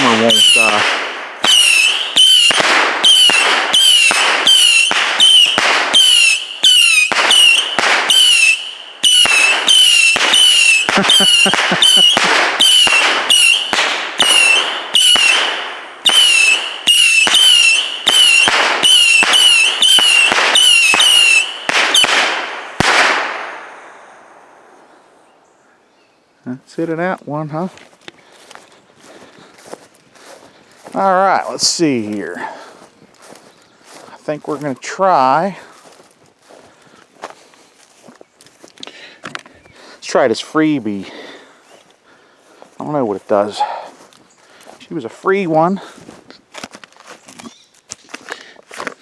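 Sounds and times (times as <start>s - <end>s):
whistling firework shots: 0.0s - 23.8s.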